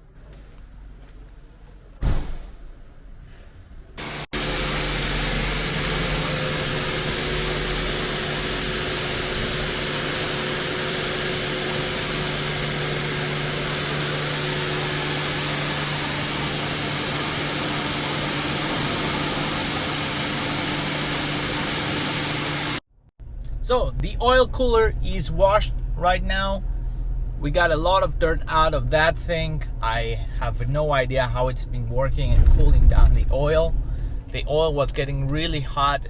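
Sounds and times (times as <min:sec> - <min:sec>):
pressure washer water jet hissing: 0:04.0 - 0:22.8
washer pump humming: 0:04.0 - 0:22.8.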